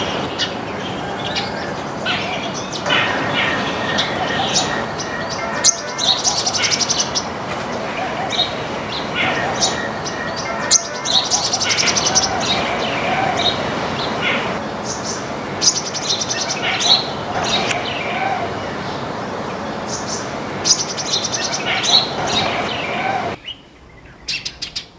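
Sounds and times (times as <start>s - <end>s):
fast rattling bird chatter: 0.0s - 23.4s
small birds chirping: 0.0s - 24.9s.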